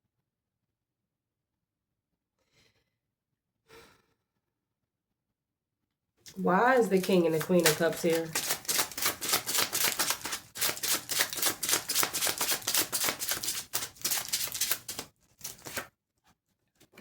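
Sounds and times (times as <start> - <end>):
cards being shuffled: 6.3 - 15.9.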